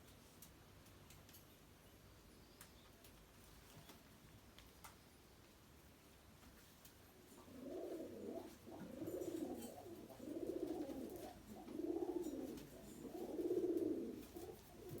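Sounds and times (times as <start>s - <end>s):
pigeon cooing: 7.4s - 15.0s.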